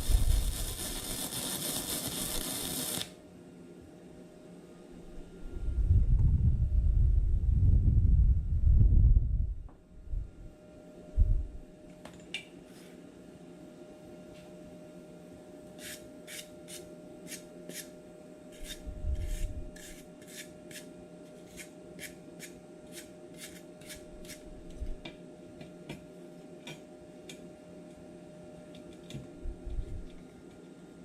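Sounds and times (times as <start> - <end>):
faint steady hum: 0.0 - 31.0
hand tool rasping scrapes: 18.6 - 24.4.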